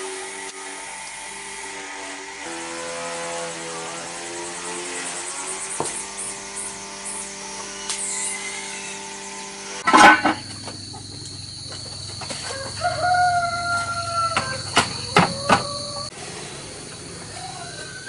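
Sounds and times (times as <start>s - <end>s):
steady hum of even pitches: 0.0s - 18.0s
rooster crowing: 12.2s - 16.2s.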